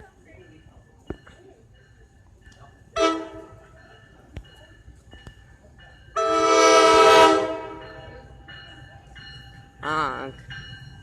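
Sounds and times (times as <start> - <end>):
train horn chord: 3.0 - 3.5, 6.2 - 7.9.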